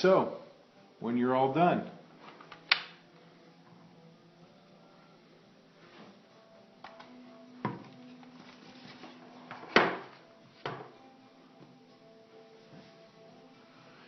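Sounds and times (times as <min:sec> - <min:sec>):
helmet knocks and clicks: 0:07.6 - 0:08.0.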